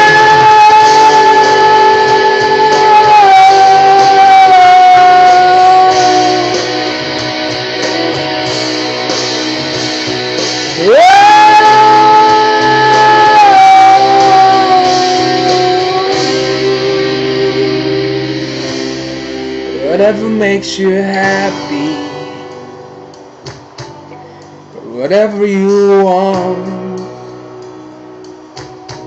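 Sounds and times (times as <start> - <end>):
person singing high notes: 0.0 - 6.8, 10.8 - 18.4
guitar band backing: 0.0 - 29.0.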